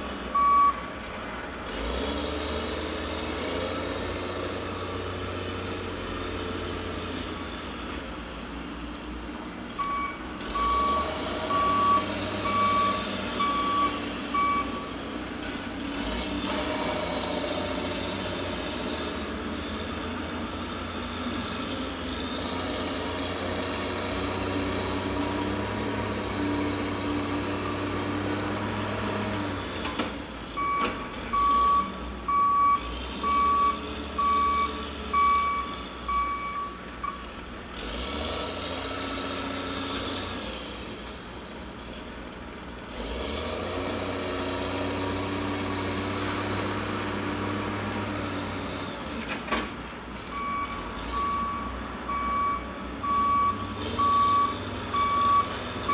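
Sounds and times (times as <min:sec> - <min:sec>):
heavy equipment engine running: 0:00.0 - 0:55.9
backup alarm beeping: 0:09.8 - 0:14.9, 0:50.4 - 0:55.9.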